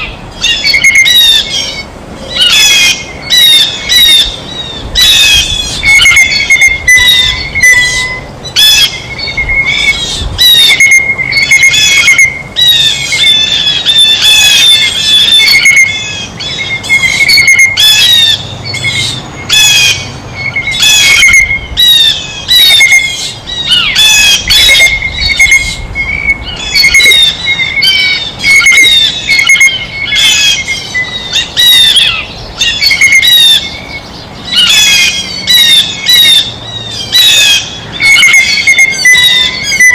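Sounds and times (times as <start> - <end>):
blue jays squawking: 0.0 - 39.9.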